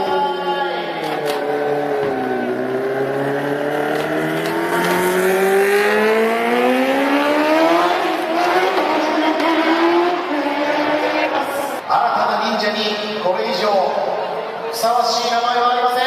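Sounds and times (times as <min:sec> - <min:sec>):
motorcycle engine accelerating: 0:01.1 - 0:11.8.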